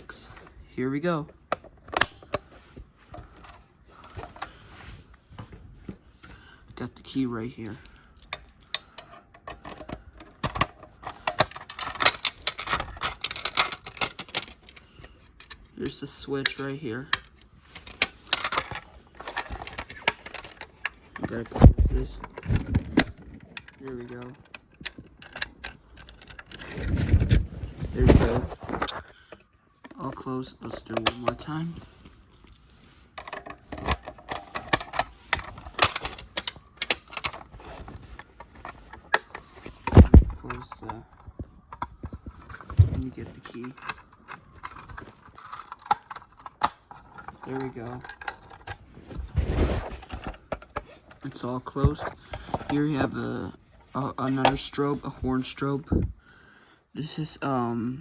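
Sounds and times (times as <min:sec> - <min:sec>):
key rattling in a lock: 0:07.1 - 0:14.8
plastic and metal clicks: 0:07.6 - 0:15.6, 0:16.4 - 0:27.4, 0:28.7 - 0:48.8.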